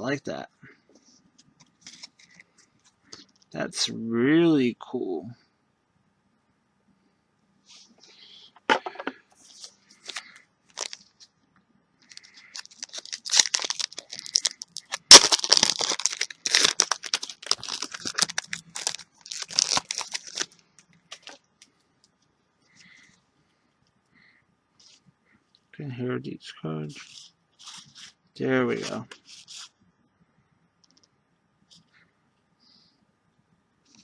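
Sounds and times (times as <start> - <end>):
wrapper crinkling and tearing: 9.6 - 11.3, 12.0 - 21.4, 26.9 - 29.7
wrapper snapping: 10.1 - 11.0, 12.1 - 21.4.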